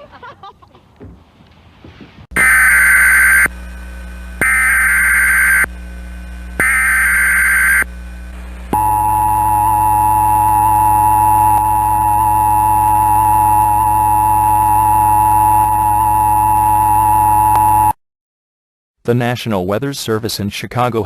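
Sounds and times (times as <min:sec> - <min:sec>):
digital data tones: 0:02.4 - 0:03.5, 0:04.4 - 0:05.7, 0:06.6 - 0:07.9
two-tone attention signal: 0:02.4 - 0:03.5, 0:06.6 - 0:07.8, 0:08.8 - 0:17.9.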